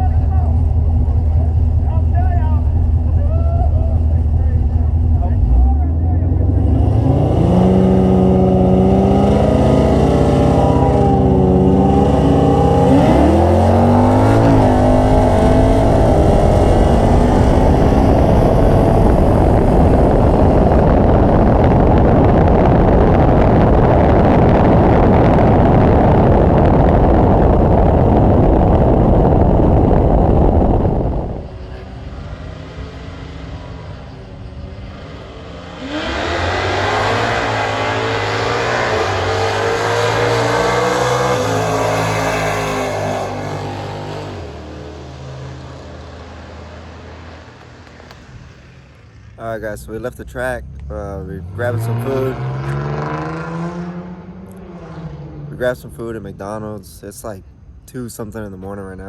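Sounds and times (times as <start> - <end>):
car engine revving: 0.0 - 59.0.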